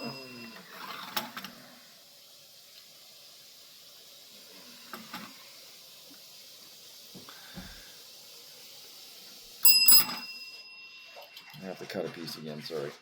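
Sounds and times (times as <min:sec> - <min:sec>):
bell ringing: 0:00.0 - 0:01.0, 0:09.6 - 0:11.4.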